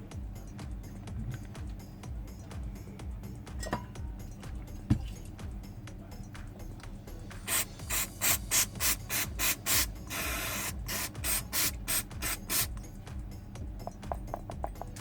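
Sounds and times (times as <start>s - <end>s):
quick hissing strokes: 7.5s - 12.7s.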